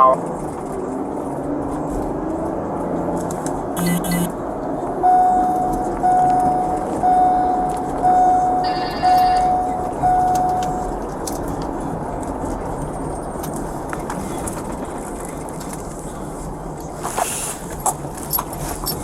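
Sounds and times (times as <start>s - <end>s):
vehicle warning chime beeping: 3.8s - 4.4s, 5.0s - 11.0s.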